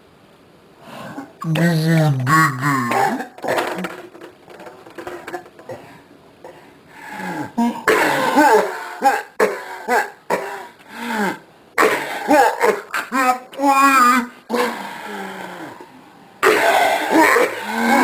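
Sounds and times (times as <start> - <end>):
person coughing hard: 2.8 - 4.0, 7.6 - 10.8, 11.8 - 13.4
throat clearing: 2.9 - 4.0.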